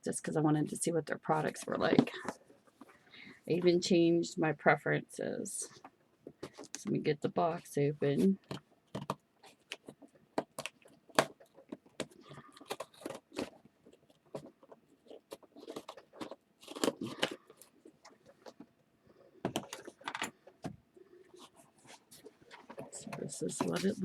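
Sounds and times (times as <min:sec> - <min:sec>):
box being torn open: 0:09.0 - 0:17.9.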